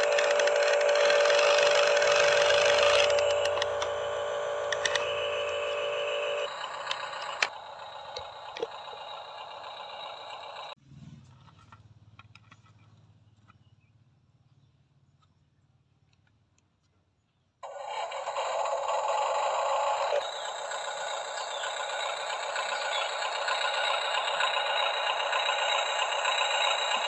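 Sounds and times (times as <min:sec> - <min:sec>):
toy motor and gearbox whirring: 0:00.0 - 0:10.8, 0:17.6 - 0:27.0.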